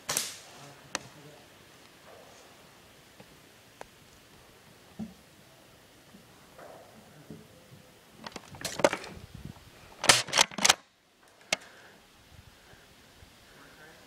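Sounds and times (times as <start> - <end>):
sharp clicks and snaps: 10.0 - 10.8.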